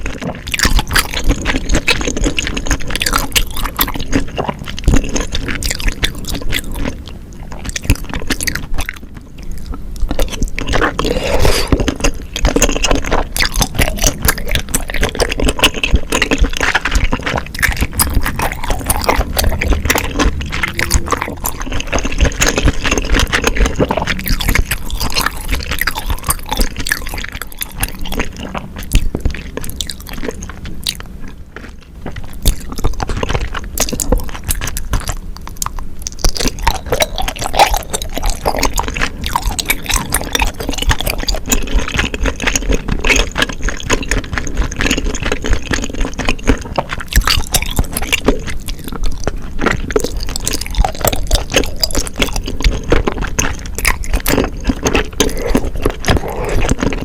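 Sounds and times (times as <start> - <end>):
wet chewing sounds: 0.0 - 57.0.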